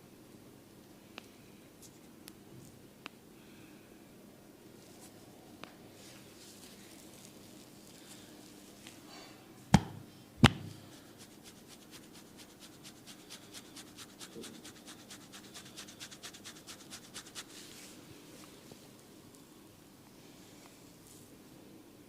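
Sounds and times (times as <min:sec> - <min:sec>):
hands slapping body: 0:09.7 - 0:10.8.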